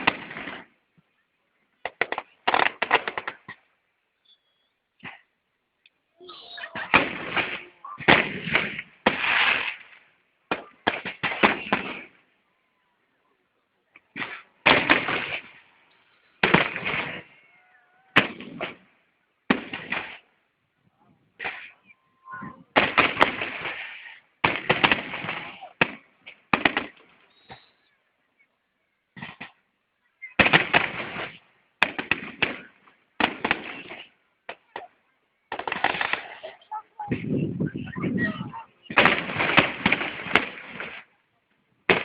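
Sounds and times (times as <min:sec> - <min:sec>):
fireworks bursting: 0:00.0 - 0:00.8, 0:01.8 - 0:03.7, 0:06.3 - 0:12.3, 0:14.1 - 0:20.4, 0:21.4 - 0:28.0, 0:29.2 - 0:29.6, 0:30.2 - 0:41.1
rumble of fireworks: 0:00.0 - 0:00.8, 0:01.8 - 0:03.6, 0:06.6 - 0:12.2, 0:14.0 - 0:15.7, 0:16.4 - 0:17.5, 0:18.1 - 0:18.9, 0:19.5 - 0:20.3, 0:21.4 - 0:27.7, 0:30.2 - 0:34.9, 0:35.5 - 0:41.1.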